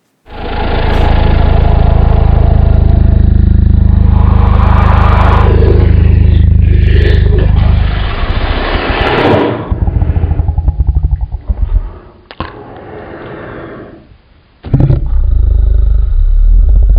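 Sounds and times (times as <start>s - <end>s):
dense rumble: 0.0s - 12.4s, 14.7s - 16.9s
sharp crack: 0.0s - 12.9s.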